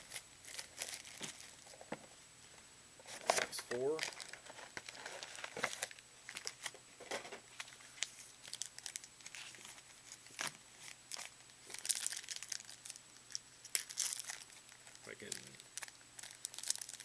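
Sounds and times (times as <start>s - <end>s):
wrappers tearing and crinkling: 0.0s - 1.8s, 3.1s - 6.7s, 7.6s - 17.0s
sharp wrapper snaps: 11.8s - 17.0s.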